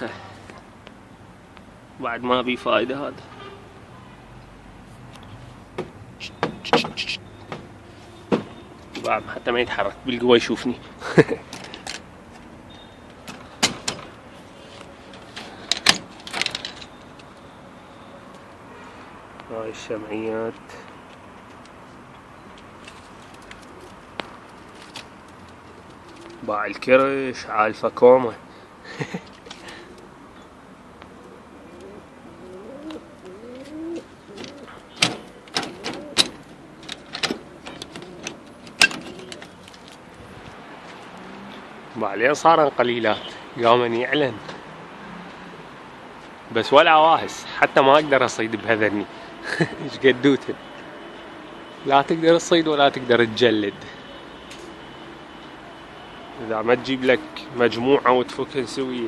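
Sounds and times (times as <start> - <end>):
pigeons cooing: 29.4 - 39.8.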